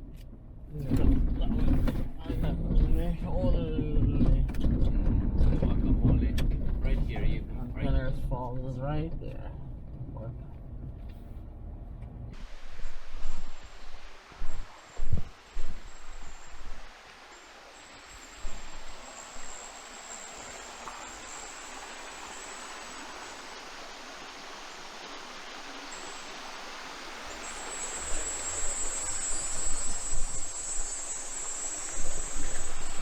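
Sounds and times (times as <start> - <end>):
high insect buzz: 12.4 - 33.0
waterfall rushing: 12.4 - 33.0.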